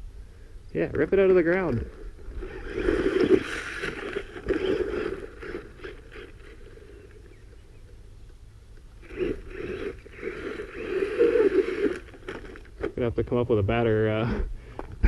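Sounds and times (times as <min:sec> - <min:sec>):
toy truck tyres scrabbling on dirt: 0:00.9 - 0:07.7, 0:08.8 - 0:13.2.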